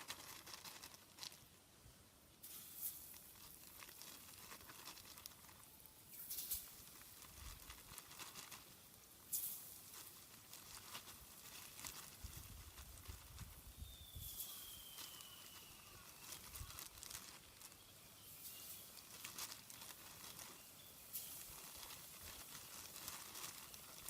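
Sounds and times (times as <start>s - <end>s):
wood fire crackling: 0.0s - 24.0s
chicken frying: 2.4s - 24.0s
thin high whistle: 13.7s - 16.8s.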